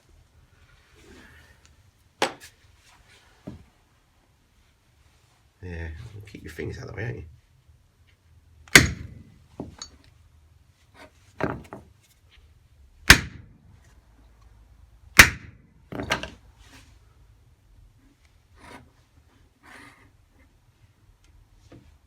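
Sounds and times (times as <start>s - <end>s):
hammer striking metal tool: 8.7s - 9.9s.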